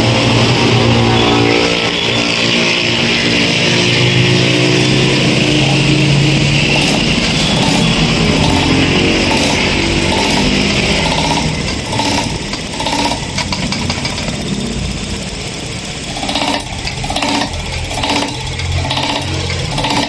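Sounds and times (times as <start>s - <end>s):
engine running steadily: 2.7s - 20.0s
short pulses: 4.4s - 20.0s.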